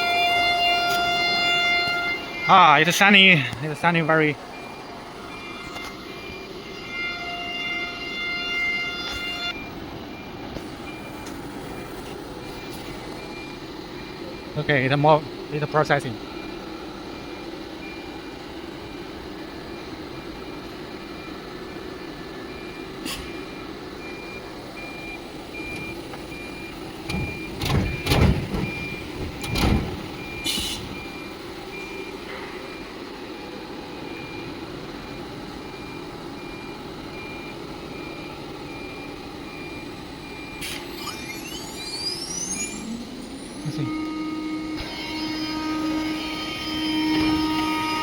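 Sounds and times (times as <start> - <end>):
rising machine whine: 0.0 - 48.0
machine beeping: 9.0 - 48.0
loud knocks: 27.0 - 30.2
router machine humming: 43.1 - 48.0.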